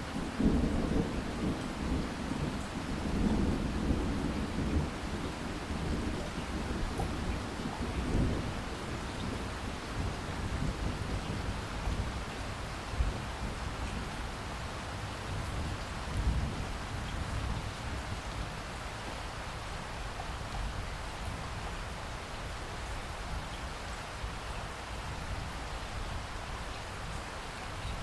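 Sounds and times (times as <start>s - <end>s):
steady rain falling: 0.0s - 28.0s
distant thunder rumble: 0.2s - 12.3s.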